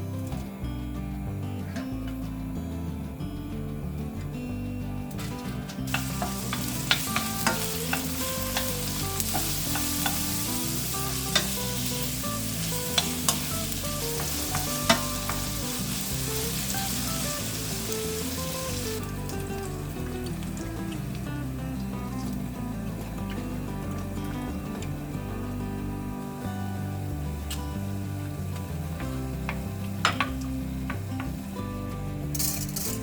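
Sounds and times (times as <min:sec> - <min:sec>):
food sizzling in a pan: 0:05.1 - 0:33.0
spatula tapping and scraping pan: 0:05.9 - 0:18.3.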